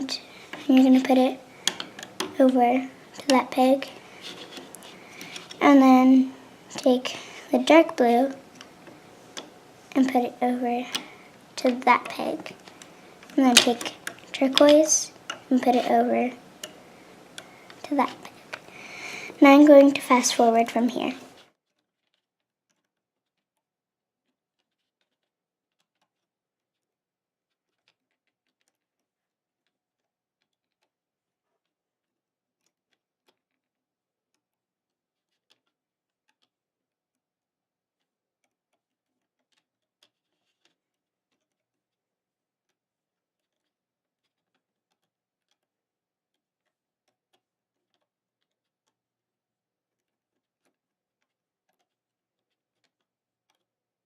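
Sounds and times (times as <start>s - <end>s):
plastic pegs and rubber bands clicking: 0.0s - 23.4s, 43.4s - 49.0s, 49.9s - 53.7s.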